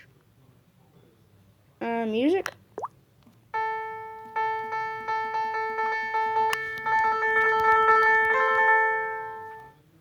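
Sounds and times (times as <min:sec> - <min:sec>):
piano-like key-press notes: 0:03.6 - 0:09.8.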